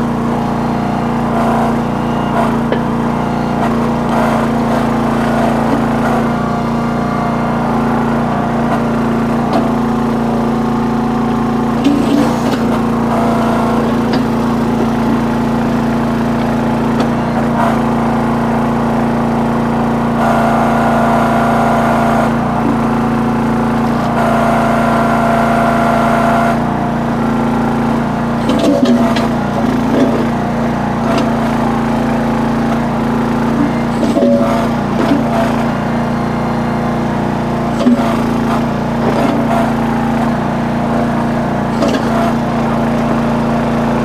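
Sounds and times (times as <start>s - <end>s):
hydraulic whine: 0.0s - 44.0s
small engine running steadily: 0.0s - 44.0s
bucket knocking and scraping rocks: 10.8s - 17.9s, 28.4s - 30.4s, 31.0s - 35.7s, 37.8s - 40.2s, 41.6s - 43.1s.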